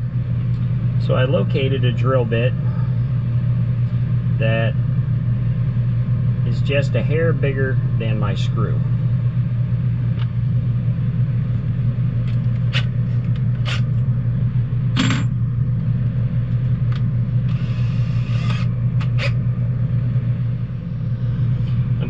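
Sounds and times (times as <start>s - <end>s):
steady low hum: 0.0s - 22.0s
tools and parts clinking: 15.0s - 15.4s.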